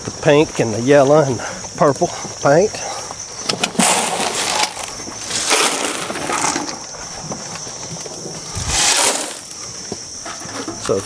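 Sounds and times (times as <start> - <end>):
crickets droning: 0.0 - 11.0
crunching and rustling: 3.4 - 11.0.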